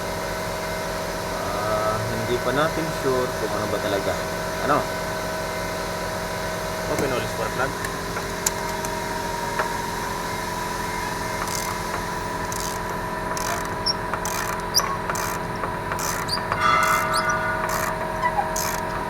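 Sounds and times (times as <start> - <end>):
machine hum: 7.2 - 19.0
ratchet wrench clicking: 11.4 - 18.9.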